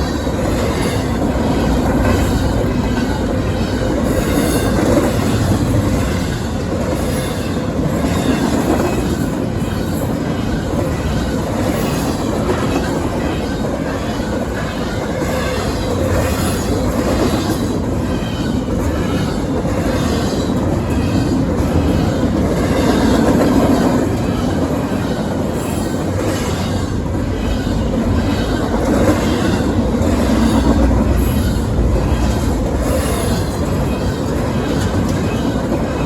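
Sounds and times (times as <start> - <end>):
freight train rolling past: 0.0 - 36.0.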